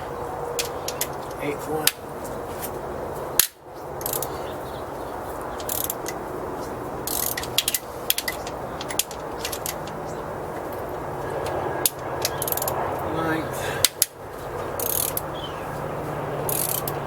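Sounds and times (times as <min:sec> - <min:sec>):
socket ratchet clicking: 0:03.4 - 0:04.3, 0:05.6 - 0:06.2, 0:07.0 - 0:10.0, 0:11.8 - 0:12.8, 0:14.8 - 0:15.3, 0:16.5 - 0:17.0.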